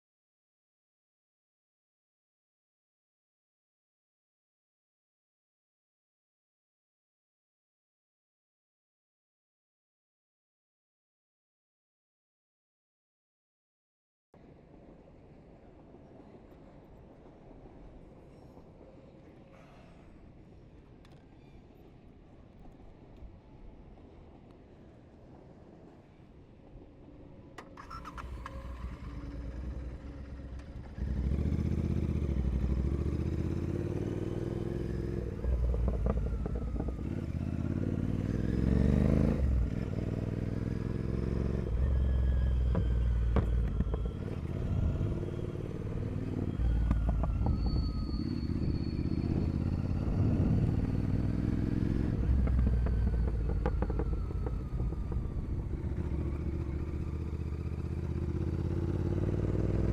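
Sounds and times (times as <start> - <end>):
motorcycle engine revving: 27.8 - 59.9.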